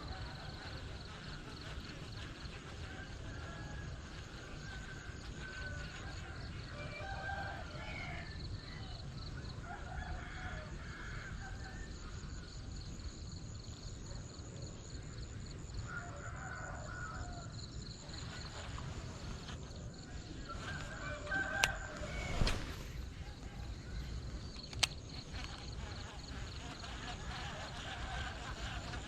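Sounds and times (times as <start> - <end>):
roosters crowing: 15.9 - 19.3, 20.4 - 22.9
sharp clicks: 24.4 - 25.7.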